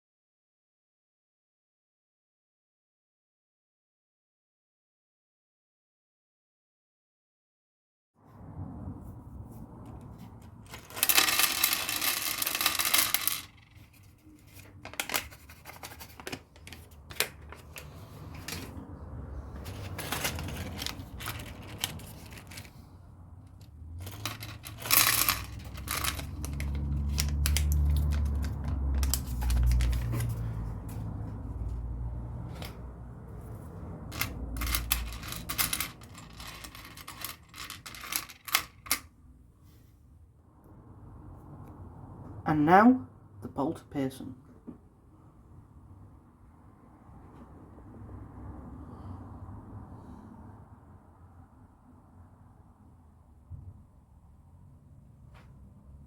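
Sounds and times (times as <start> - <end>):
plastic bricks clattering: 10.5 - 18.8, 19.6 - 22.8, 23.5 - 30.4, 34.1 - 39.1
plastic bag rustling: 19.6 - 22.8.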